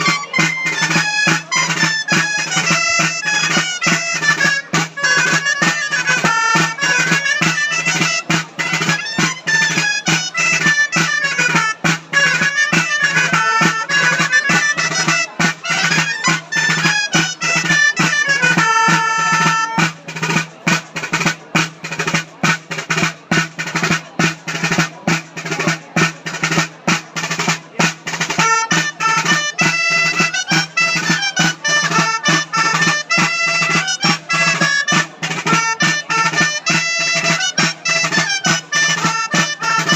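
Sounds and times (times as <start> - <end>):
drum beating: 0.0 - 39.9
reedy wind instrument melody: 0.0 - 39.9.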